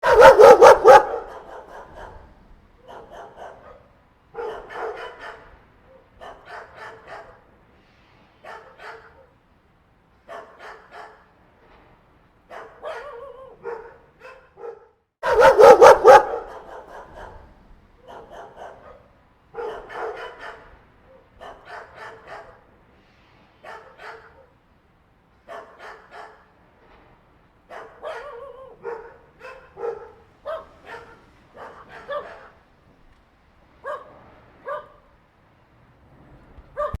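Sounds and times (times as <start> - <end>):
dogs barking: 0.0 - 7.5, 8.5 - 9.3, 10.3 - 11.3, 12.5 - 22.6, 23.6 - 24.5, 25.5 - 26.5, 27.7 - 32.6, 33.8 - 35.1, 36.8 - 37.0.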